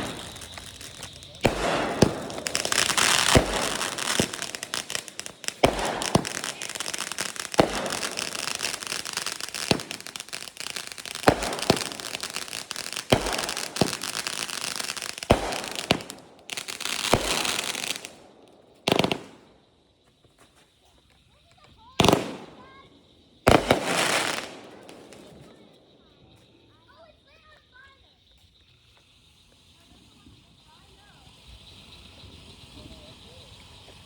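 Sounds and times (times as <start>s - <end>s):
fireworks bangs: 0.0s - 19.5s, 21.4s - 28.0s
fireworks crackling hiss: 0.0s - 34.0s.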